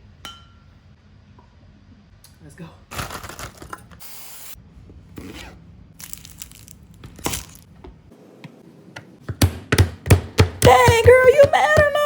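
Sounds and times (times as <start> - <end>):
heavy thumps: 9.2 - 12.0.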